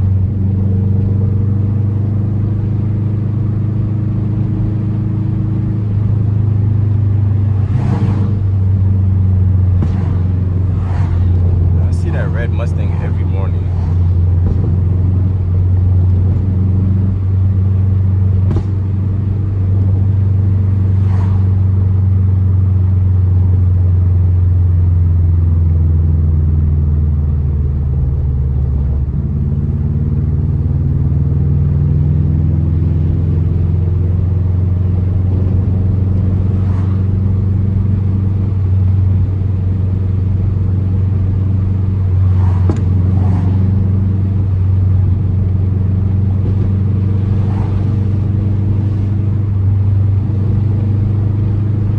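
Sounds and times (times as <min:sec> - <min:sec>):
car engine rumble: 0:00.0 - 0:51.9
exhaust cracks: 0:05.7 - 0:23.2, 0:33.7 - 0:51.9.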